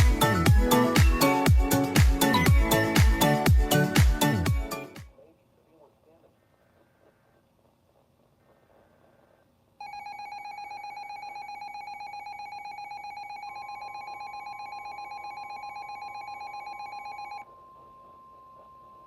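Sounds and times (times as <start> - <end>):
steady pure alarm tone: 9.8 - 19.0.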